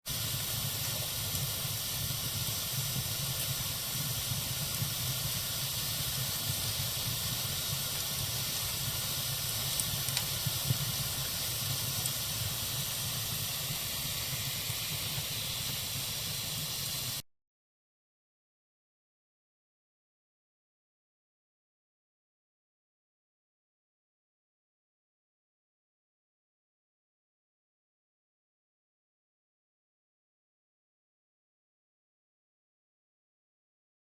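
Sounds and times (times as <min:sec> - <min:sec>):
campfire hissing: 0:00.0 - 0:17.2
fire crackles: 0:00.1 - 0:17.2.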